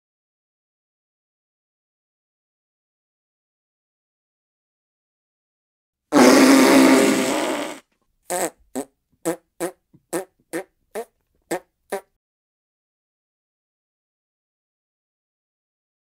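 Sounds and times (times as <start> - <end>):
fart sound effects: 6.1 - 12.2.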